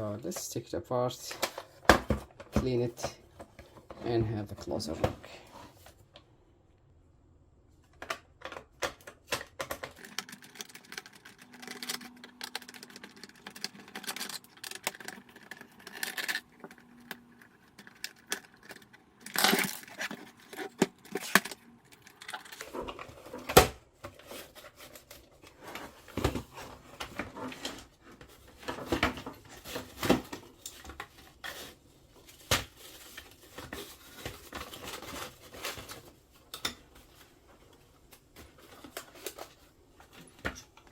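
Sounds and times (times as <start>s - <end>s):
calculator parts clicking and scraping: 8.0s - 37.8s.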